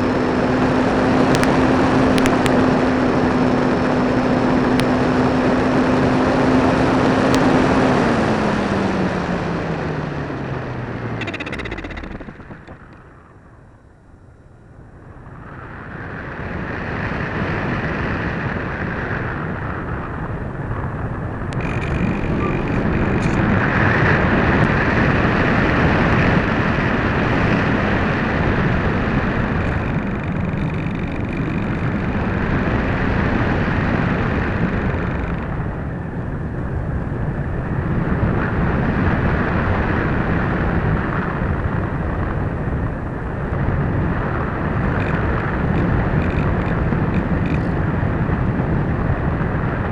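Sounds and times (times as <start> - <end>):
airflow rushing over microphone: 0.0 - 49.9
faint high whine: 9.9 - 16.0.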